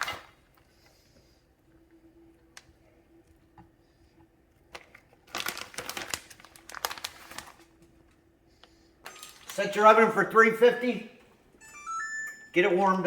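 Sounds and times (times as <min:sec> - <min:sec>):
plastic bag crinkling: 0:04.8 - 0:08.0.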